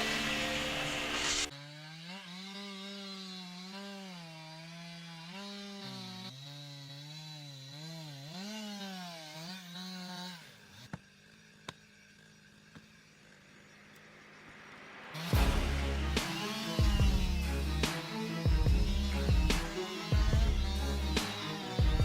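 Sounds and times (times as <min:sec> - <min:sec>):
chainsaw cutting: 0:00.0 - 0:22.0.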